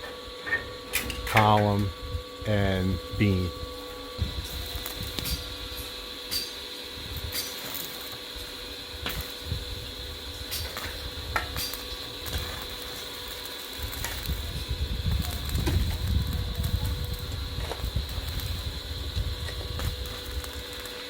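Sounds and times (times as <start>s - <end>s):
arc welding hum and hiss: 0.0s - 21.0s
welding crackles: 4.2s - 21.0s.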